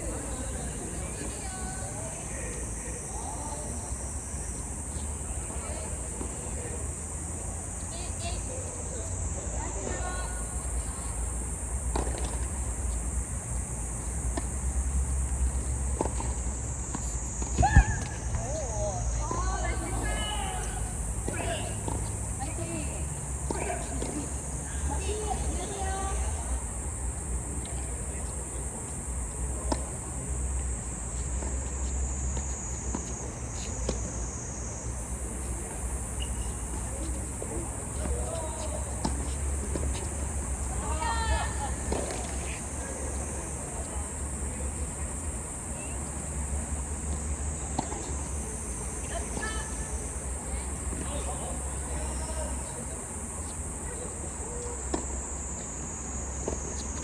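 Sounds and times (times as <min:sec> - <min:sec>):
insects droning: 0:00.0 - 0:57.0
steady high hiss: 0:00.0 - 0:57.0
tennis balls being struck: 0:15.2 - 0:22.1.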